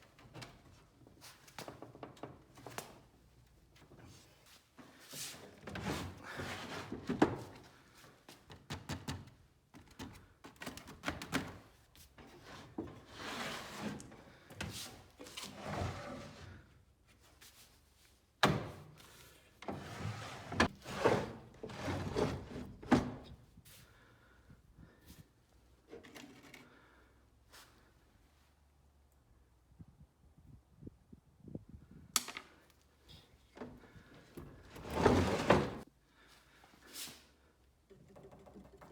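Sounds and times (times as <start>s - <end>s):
wooden drawers knocking and scraping: 19.6s - 23.2s, 34.4s - 35.8s.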